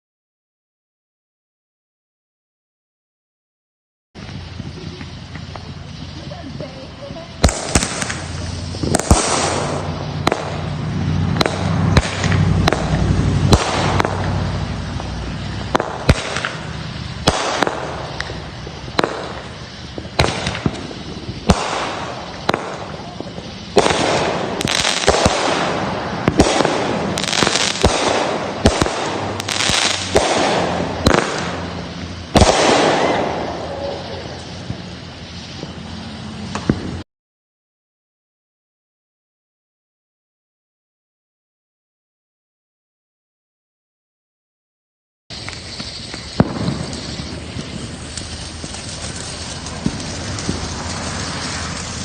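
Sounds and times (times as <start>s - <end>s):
fireworks bangs: 4.2s - 37.0s, 45.3s - 52.0s
fireworks crackling hiss: 4.2s - 37.0s, 45.3s - 52.0s.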